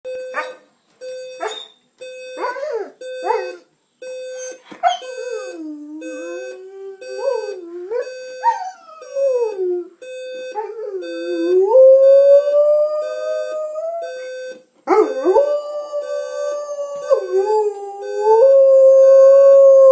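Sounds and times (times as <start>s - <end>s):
alarm clock beeping: 0.1s - 19.3s
dog yipping: 0.4s - 0.6s, 1.4s - 1.8s, 2.4s - 3.6s, 4.4s - 5.5s.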